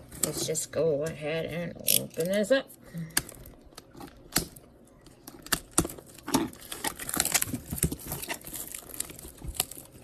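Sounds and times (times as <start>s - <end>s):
plastic wrap crackling: 3.2s - 10.0s.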